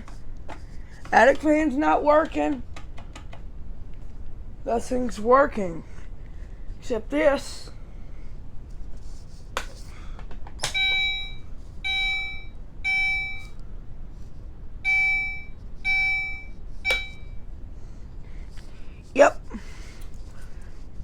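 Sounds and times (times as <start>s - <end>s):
fire alarm beeping: 10.6s - 13.6s, 14.8s - 17.4s.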